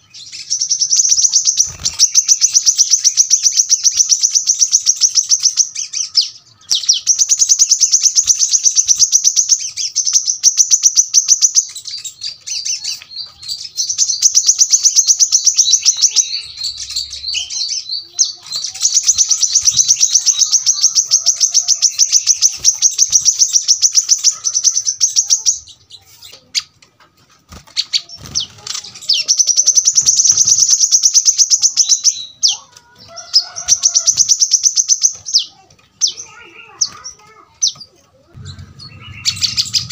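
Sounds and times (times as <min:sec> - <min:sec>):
sunbird singing fast high notes: 0:38.4 - 0:39.9.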